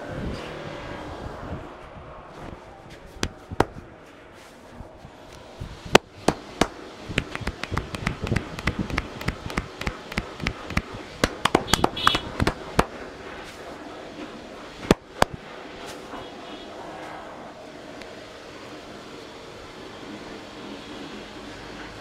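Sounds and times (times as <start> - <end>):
hands slapping head and neck: 3.2 - 3.8, 5.9 - 12.9.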